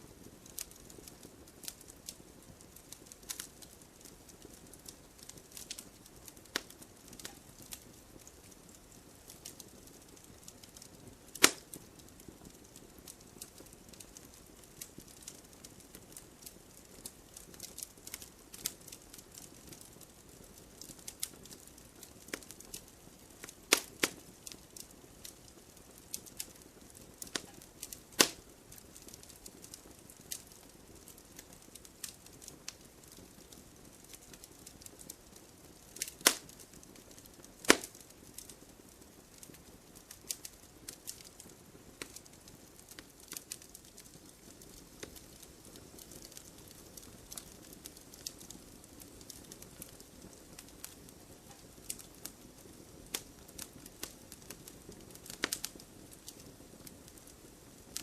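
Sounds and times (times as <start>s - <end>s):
wood fire crackling: 0.0s - 58.0s
logs snapping: 11.4s - 11.6s, 36.2s - 36.4s, 37.7s - 37.9s.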